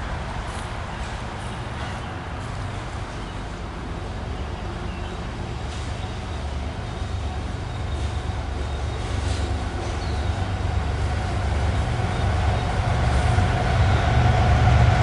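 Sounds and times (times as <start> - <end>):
low rumble of a vehicle: 0.0 - 15.0.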